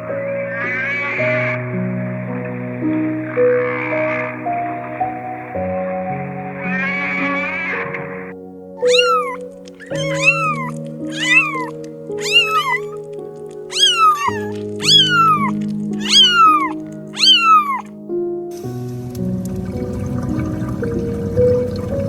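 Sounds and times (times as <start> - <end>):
background music with held chords: 0.0 - 22.0
cat meowing: 0.2 - 1.7, 3.2 - 4.5, 6.5 - 17.9.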